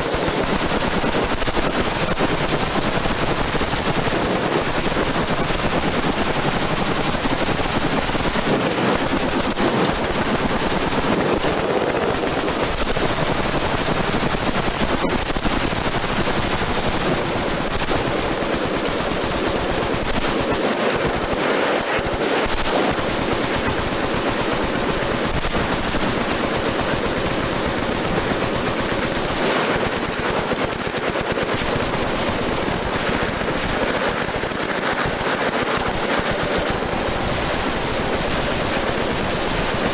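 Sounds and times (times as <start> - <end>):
machine gun fire: 0.0 - 39.9.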